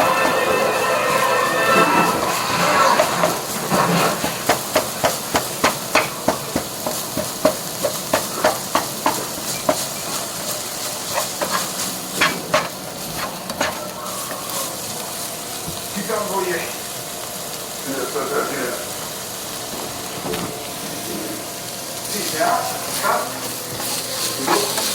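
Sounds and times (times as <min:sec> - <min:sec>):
utensil knocking against cookware: 0:02.6 - 0:10.2, 0:12.2 - 0:13.8.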